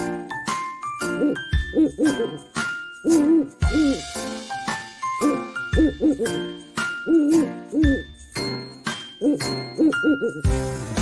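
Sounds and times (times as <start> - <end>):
tinkling background music: 0.0 - 11.0
animal calls: 1.0 - 4.1, 5.2 - 6.4, 7.0 - 8.1.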